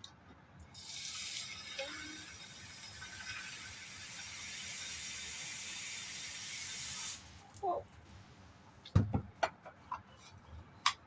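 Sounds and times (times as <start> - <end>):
tap water running into a bowl: 0.8 - 7.2.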